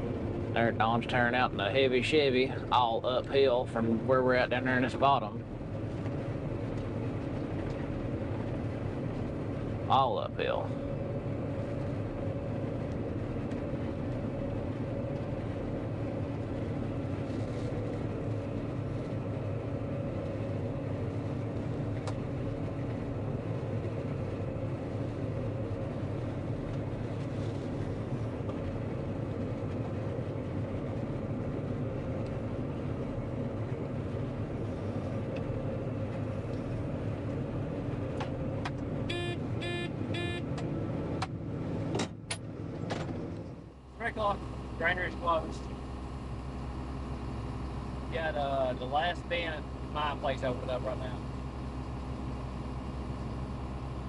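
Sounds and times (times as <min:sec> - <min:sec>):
diesel engine drone: 0:00.0 - 0:54.0
electronic beeps: 0:39.1 - 0:40.4.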